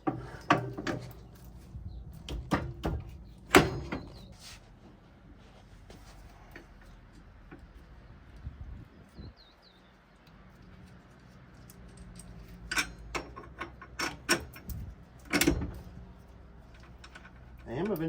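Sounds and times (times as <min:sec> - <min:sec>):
metal tools clinking: 0:11.2 - 0:18.0.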